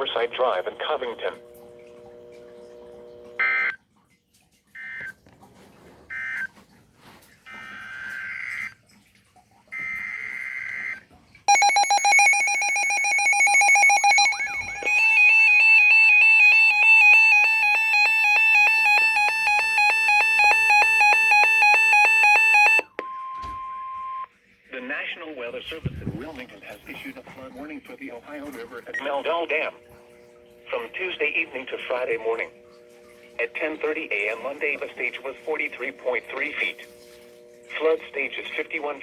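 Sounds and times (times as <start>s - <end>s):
pulsing electronic alarm: 0.0s - 3.8s, 6.1s - 6.5s, 7.5s - 8.8s, 9.7s - 24.3s
chirping tone bursts: 11.5s - 24.2s.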